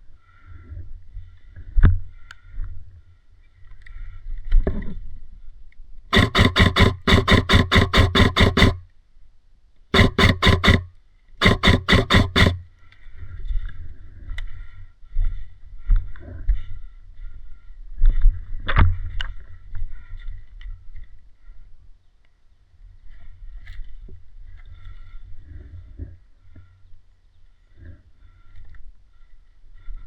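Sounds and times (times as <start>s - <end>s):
airsoft gun firing bursts: 6.1s - 8.8s, 10.0s - 12.6s
sharp knock: 6.2s - 8.8s, 10.0s - 10.8s, 11.4s - 12.6s.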